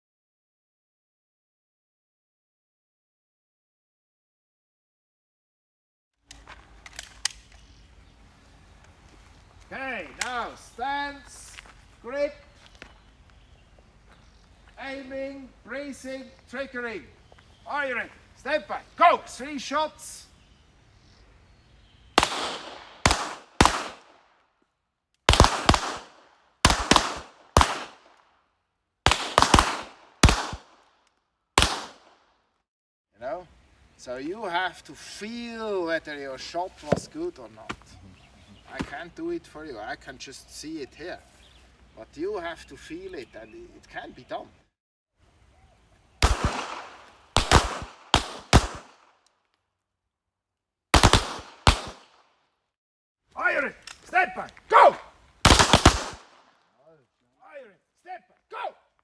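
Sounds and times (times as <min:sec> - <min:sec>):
pistol shots echoing: 0:22.2 - 0:24.2, 0:25.3 - 0:28.2, 0:29.0 - 0:30.8, 0:31.6 - 0:32.2, 0:46.2 - 0:49.1, 0:51.0 - 0:52.2, 0:54.7 - 0:56.5.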